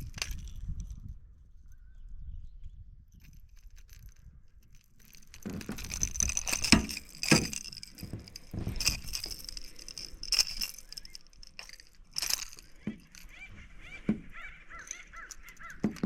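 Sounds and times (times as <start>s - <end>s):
metal fishing tackle clinking: 3.6s - 16.0s.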